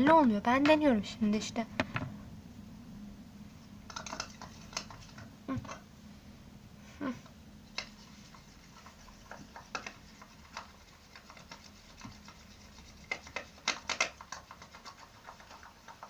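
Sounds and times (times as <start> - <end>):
slime clicking and scraping: 7.8 - 16.0.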